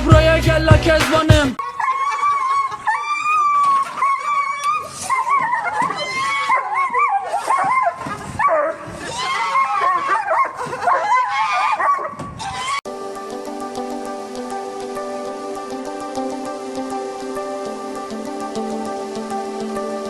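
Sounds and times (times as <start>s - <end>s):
music: 0.0s - 1.6s, 12.9s - 20.0s
dog whining and yipping: 1.8s - 12.8s.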